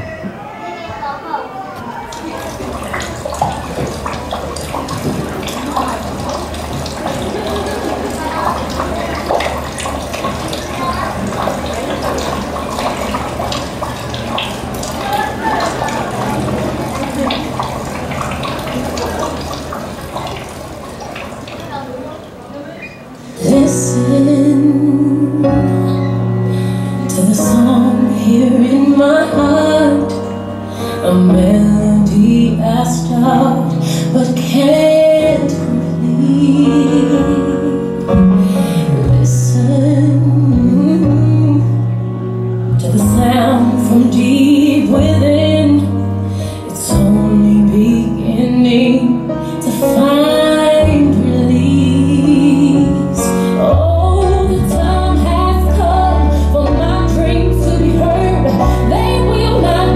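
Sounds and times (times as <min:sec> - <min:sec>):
woman singing a song: 0:23.4 - 0:42.0, 0:42.8 - 0:59.9
held chords and bass line: 0:23.5 - 0:59.9.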